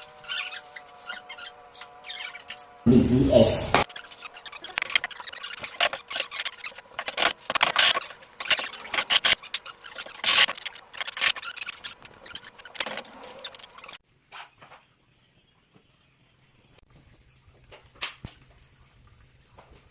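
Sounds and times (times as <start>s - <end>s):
scraping and squeaking of wood: 0.0s - 2.8s, 3.8s - 14.9s.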